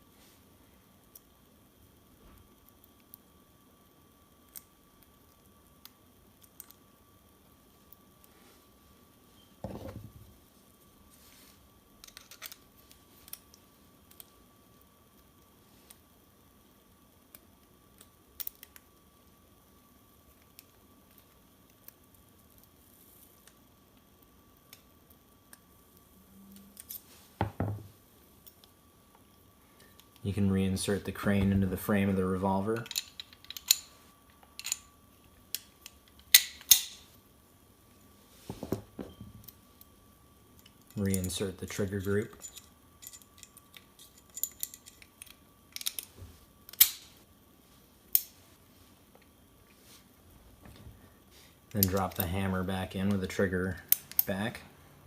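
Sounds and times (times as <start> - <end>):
revolver parts clicking: 32.8 - 37.0, 40.6 - 47.0, 53.9 - 54.4.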